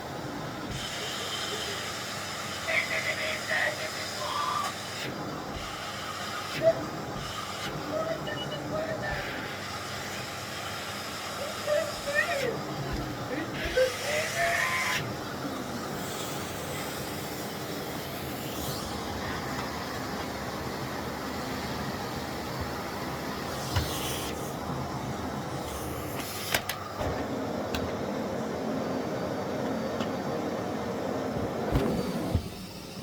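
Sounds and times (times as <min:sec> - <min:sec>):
vacuum cleaner running: 0:00.0 - 0:33.0.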